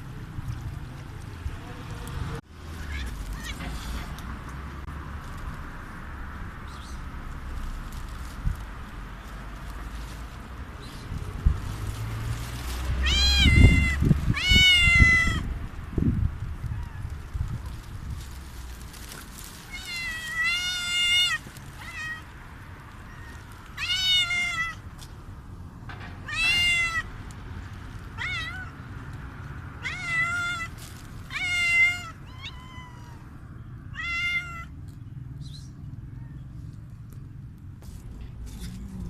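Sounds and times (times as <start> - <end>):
cat meowing loudly: 2.8 - 3.9, 13.0 - 15.5, 16.6 - 17.2, 19.6 - 22.4, 23.0 - 24.8, 26.2 - 27.1, 28.1 - 28.8, 29.8 - 34.8.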